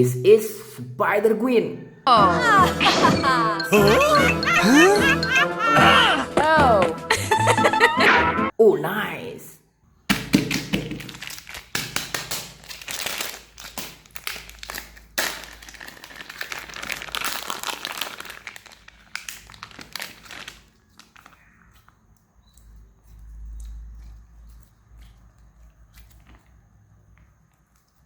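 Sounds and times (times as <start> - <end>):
plastic packaging crinkling: 10.3 - 26.8.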